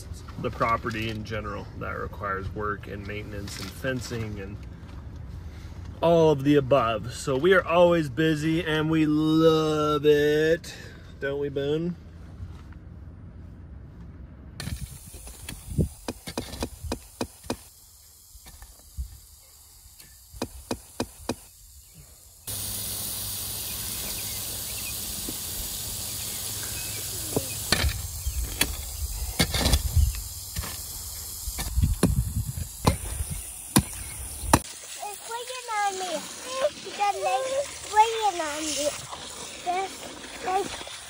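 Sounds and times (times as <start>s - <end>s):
background hiss: 14.6s - 41.0s
hand tools thudding into soil: 27.3s - 30.9s.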